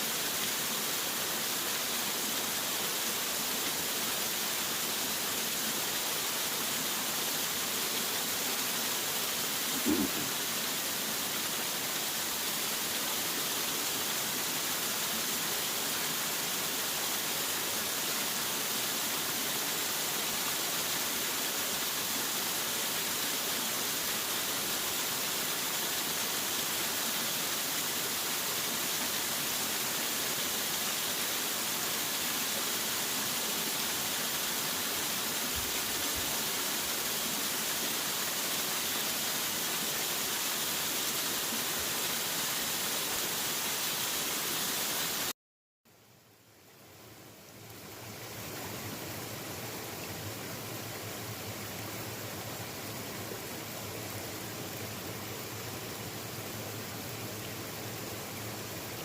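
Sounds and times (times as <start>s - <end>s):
waterfall rushing: 0.0s - 45.3s.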